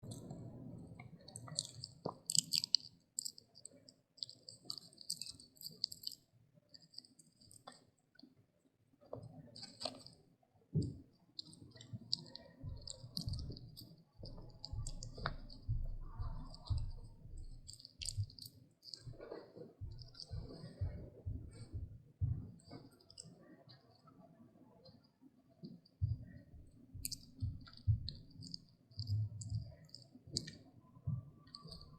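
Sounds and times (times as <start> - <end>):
puppy crunching a treat: 1.3 - 6.2, 11.4 - 20.8.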